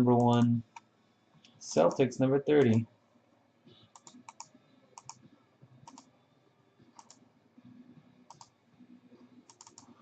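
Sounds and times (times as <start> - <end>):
computer mouse double clicks: 9.5 - 9.9.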